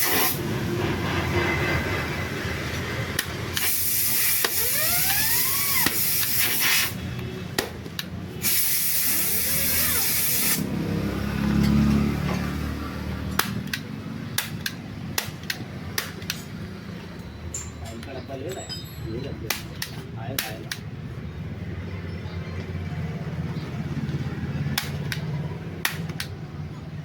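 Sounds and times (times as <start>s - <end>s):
hissing bursts of pressurised air: 0.0s - 2.4s, 3.5s - 7.1s, 8.4s - 10.7s
sharp clicks: 13.3s - 16.5s, 19.5s - 20.9s, 24.7s - 26.4s.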